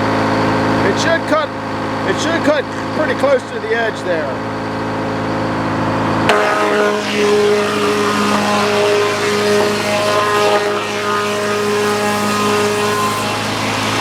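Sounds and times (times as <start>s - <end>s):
sawmill engine running: 0.0s - 14.0s
saw blade whining in wood: 6.3s - 14.0s.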